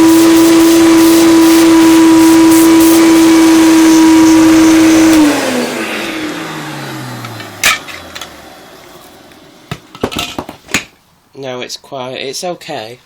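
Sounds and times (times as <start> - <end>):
motor winding down: 0.0 - 8.8
vacuum cleaner motor whining: 0.0 - 10.0.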